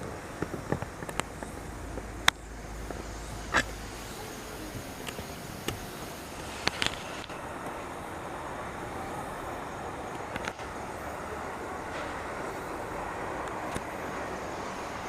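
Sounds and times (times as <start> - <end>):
outdoor background noise: 0.0 - 15.0.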